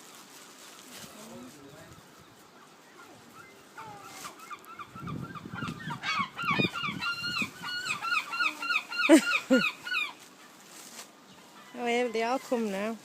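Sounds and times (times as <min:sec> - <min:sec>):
gulls yelping: 0:02.6 - 0:10.2
low gull squawks: 0:02.9 - 0:10.2.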